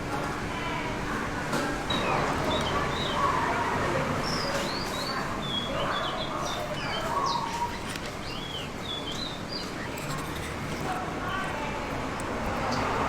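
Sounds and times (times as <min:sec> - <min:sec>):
steady background noise: 0:00.0 - 0:13.0
birds chirping: 0:01.9 - 0:11.5.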